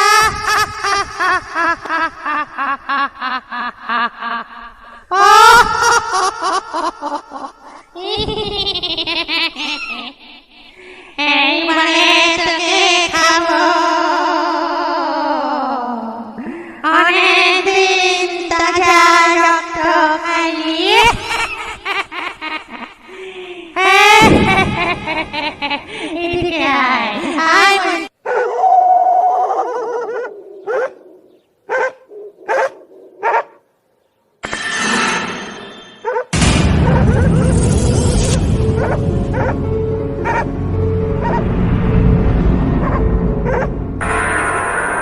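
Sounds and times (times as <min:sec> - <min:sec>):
high-pitched cackling laugh: 0:00.0 - 0:10.5, 0:20.9 - 0:23.2, 0:23.8 - 0:28.0.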